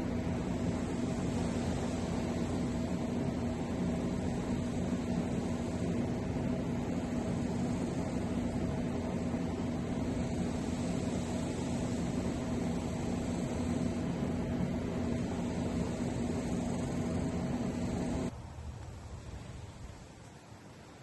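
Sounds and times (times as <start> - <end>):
steady hum and hiss: 0.0 - 21.0.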